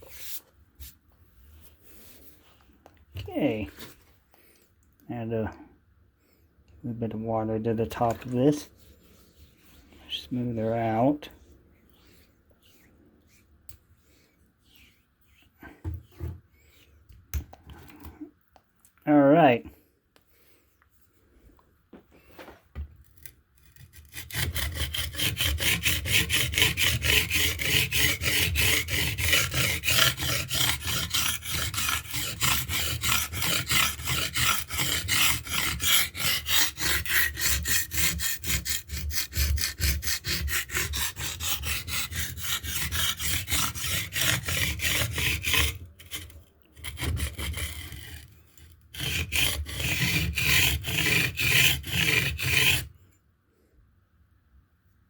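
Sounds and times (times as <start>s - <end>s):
knife scraping on sharpening stone: 23.7s - 46.3s.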